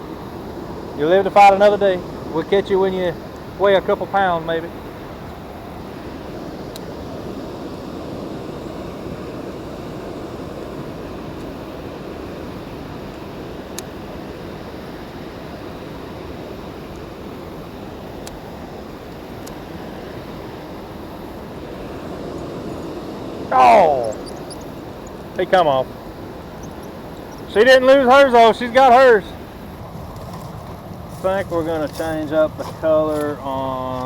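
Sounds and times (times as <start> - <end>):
steady outdoor rushing noise: 0.0 - 34.0
faint sharp ticks: 18.2 - 18.4.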